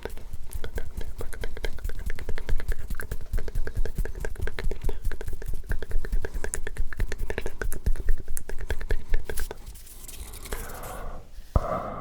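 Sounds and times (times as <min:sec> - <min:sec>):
rapid small clicks and taps: 0:00.0 - 0:09.6.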